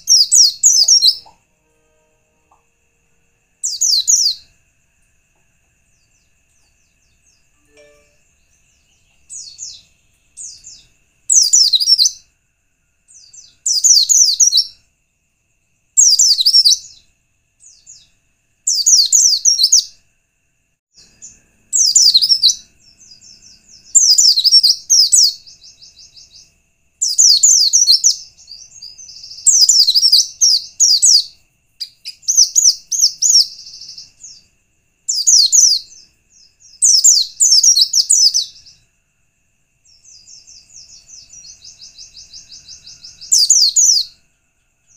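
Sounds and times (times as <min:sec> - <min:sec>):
white-eye chirping: 0:00.0 - 0:01.3, 0:03.6 - 0:04.5, 0:09.2 - 0:12.2, 0:21.2 - 0:34.4, 0:35.1 - 0:38.8.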